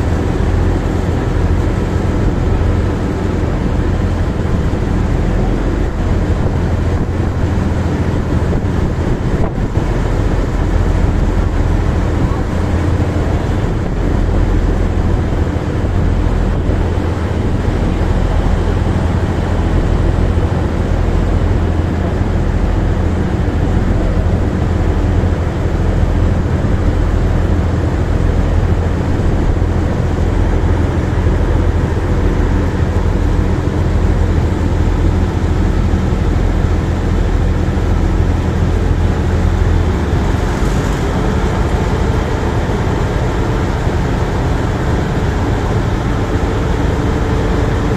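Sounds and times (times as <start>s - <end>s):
rushing water and wind: 0.0s - 47.9s
ship diesel engine drone: 0.0s - 47.9s.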